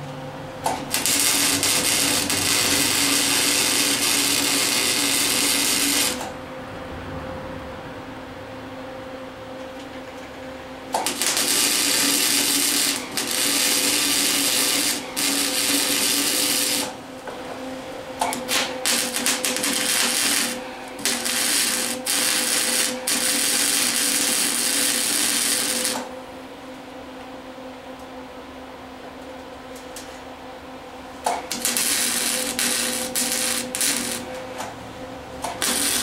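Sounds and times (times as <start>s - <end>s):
welding arc crackle and sizzle: 0.0s - 6.4s, 10.9s - 17.3s, 18.1s - 26.1s, 31.1s - 36.0s
welder steady hum: 0.0s - 36.0s.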